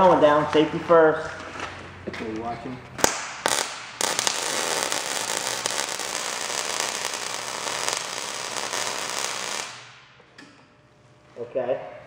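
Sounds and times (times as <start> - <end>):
welder arc crackling: 3.0 - 10.1.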